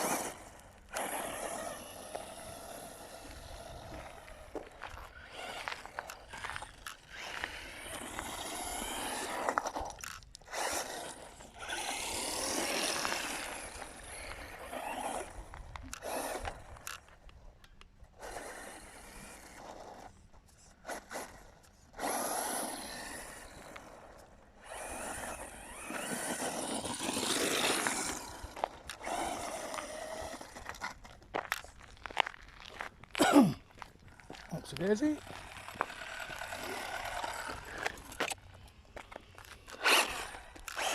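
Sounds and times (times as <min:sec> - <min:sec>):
electric motor whine: 0:00.0 - 0:17.0, 0:22.0 - 0:31.0, 0:34.5 - 0:40.9
tyres on loose dirt: 0:00.0 - 0:40.9.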